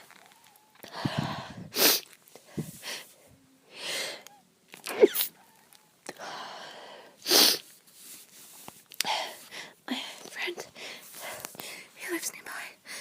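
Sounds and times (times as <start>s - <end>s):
breathy intakes of breath: 0.8s - 4.4s, 6.1s - 7.3s
woman sneezing: 4.9s - 5.4s.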